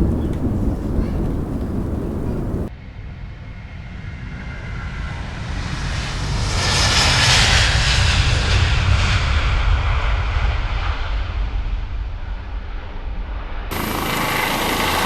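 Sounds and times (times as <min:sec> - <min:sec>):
aircraft rumble passing overhead: 0:00.0 - 0:02.7, 0:13.7 - 0:15.0.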